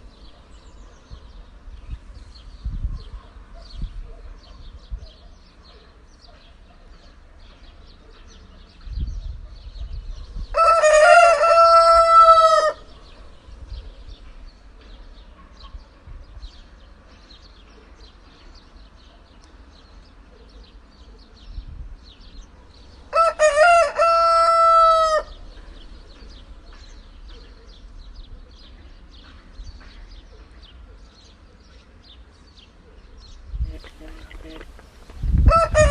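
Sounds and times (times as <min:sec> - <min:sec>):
rooster crowing: 0:10.5 - 0:12.8, 0:23.1 - 0:25.4, 0:35.4 - 0:35.9.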